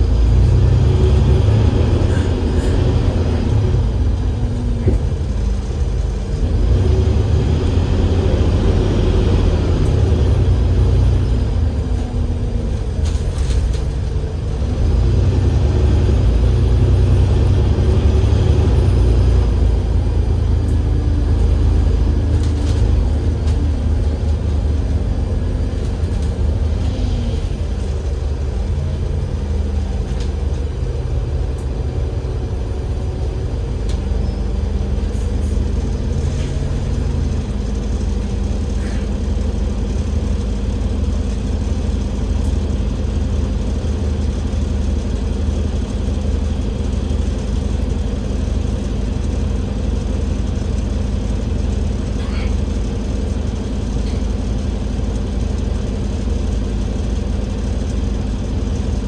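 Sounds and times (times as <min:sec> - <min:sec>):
bus diesel engine droning: 0:00.0 - 0:59.0.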